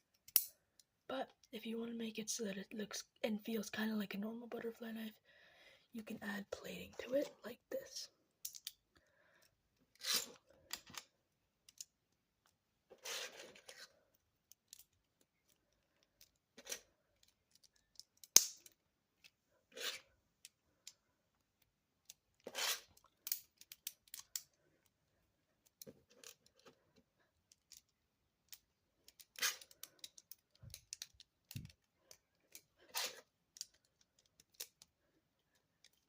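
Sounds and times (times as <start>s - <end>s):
sharp plastic snap: 18.3s - 18.6s
plastic bricks clicking: 28.5s - 31.9s.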